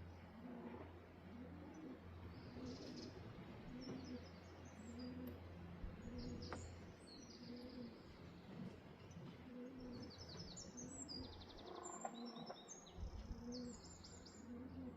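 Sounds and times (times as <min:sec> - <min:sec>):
faint low hum: 0:00.0 - 0:14.9
pigeons cooing: 0:00.0 - 0:14.9
small birds chirping: 0:01.7 - 0:14.9.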